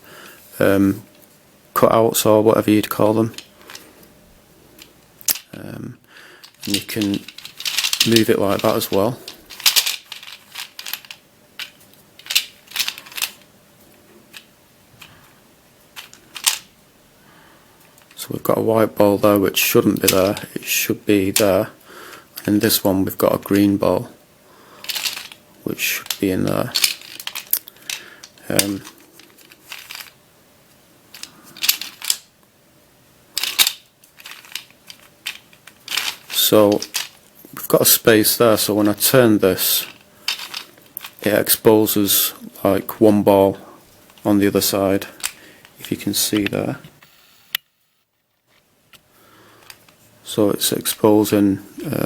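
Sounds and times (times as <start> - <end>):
plastic puzzle balls clicking and rattling: 6.4 - 13.4, 16.0 - 16.7, 19.9 - 20.5, 24.8 - 30.2, 31.1 - 32.3, 33.4 - 41.6.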